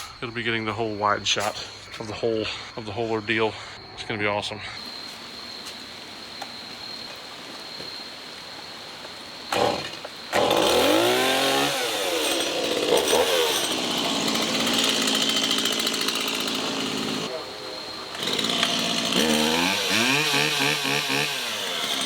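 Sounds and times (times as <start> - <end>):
chainsaw engine revving: 9.5 - 22.0.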